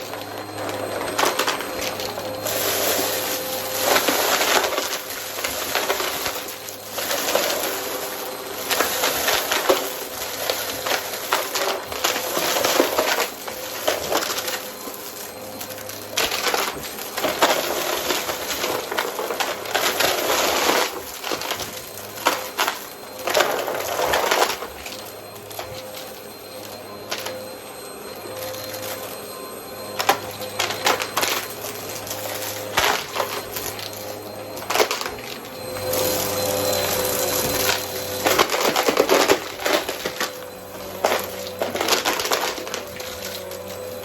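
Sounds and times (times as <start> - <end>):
vacuum cleaner motor hum: 0.0 - 44.0.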